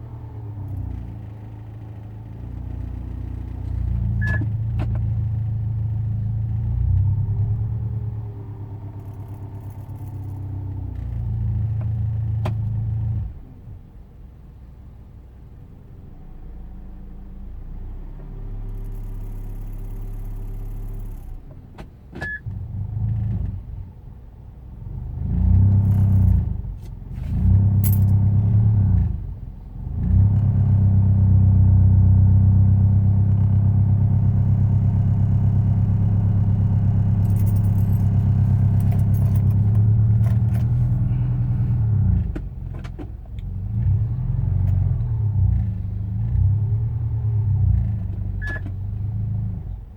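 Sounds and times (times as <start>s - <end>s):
car engine running unevenly: 35.6s - 43.5s.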